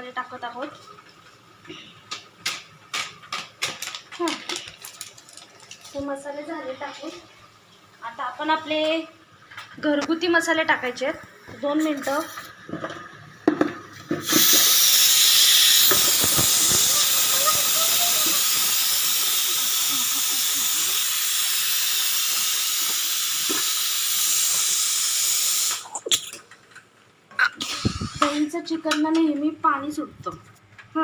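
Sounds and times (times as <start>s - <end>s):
pressure cooker steam hissing: 14.1s - 26.1s, 27.6s - 28.5s.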